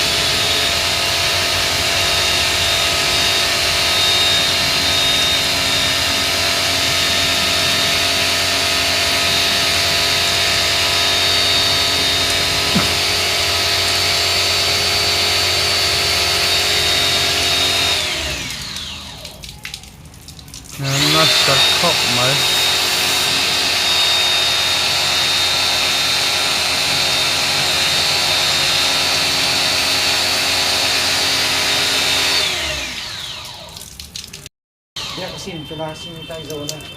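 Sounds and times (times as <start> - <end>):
electric tool motor whining: 0.0 - 19.4, 20.8 - 33.8, 35.0 - 35.6.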